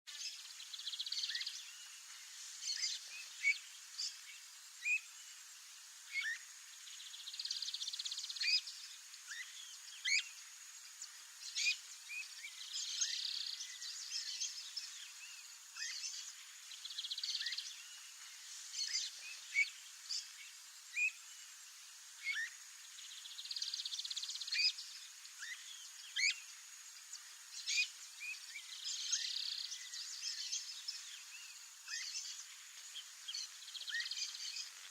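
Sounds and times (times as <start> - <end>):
steady high hiss: 0.1 - 34.9.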